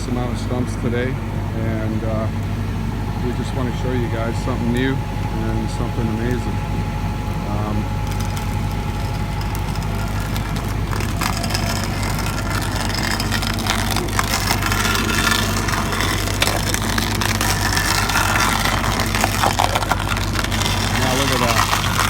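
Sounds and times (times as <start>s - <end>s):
backhoe engine running: 0.0s - 22.0s
stump grinder boring into stump: 0.0s - 22.0s
wood and rock crackling: 3.2s - 22.0s.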